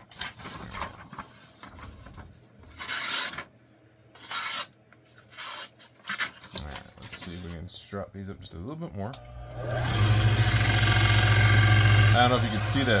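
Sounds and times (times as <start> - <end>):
knife blade rasping: 4.2 - 4.7.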